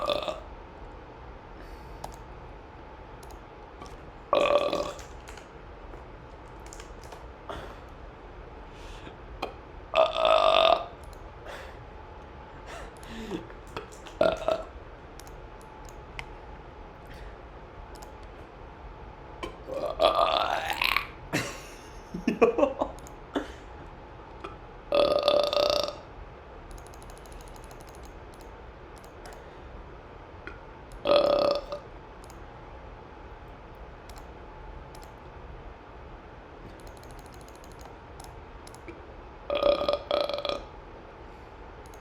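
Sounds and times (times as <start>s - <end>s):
person burping: 0.0s - 0.4s, 4.4s - 5.1s, 9.4s - 10.9s, 14.1s - 14.7s, 19.5s - 21.6s, 24.9s - 26.1s, 31.0s - 31.8s, 39.5s - 40.7s.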